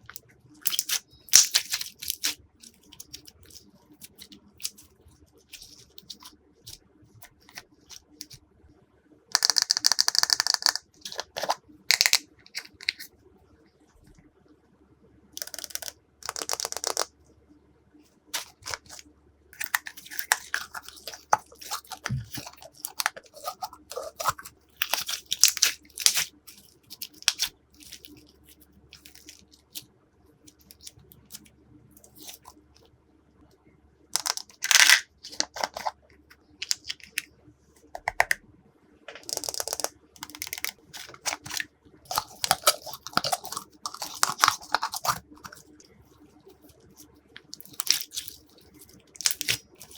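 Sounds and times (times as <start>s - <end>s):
slime sticky clicks and crackles: 0.1s - 4.9s, 19.6s - 29.8s, 39.1s - 45.6s, 47.4s - 49.9s.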